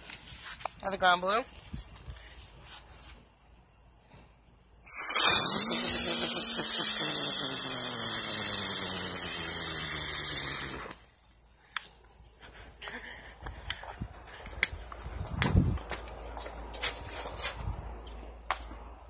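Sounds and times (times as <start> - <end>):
firework hissing and whining: 4.8 - 11.1.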